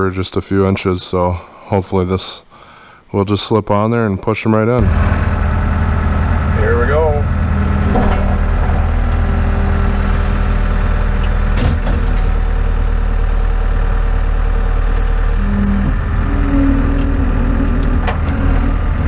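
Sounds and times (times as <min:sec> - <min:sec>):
skid steer engine droning: 0:04.8 - 0:19.0.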